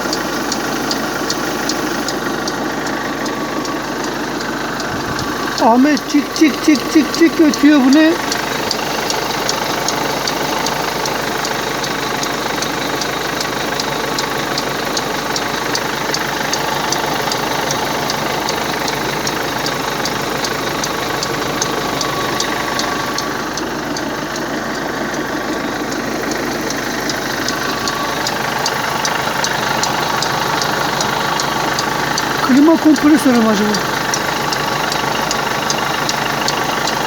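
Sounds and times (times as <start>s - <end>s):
car engine idling: 0.0s - 37.0s
engine ticking: 0.0s - 37.0s.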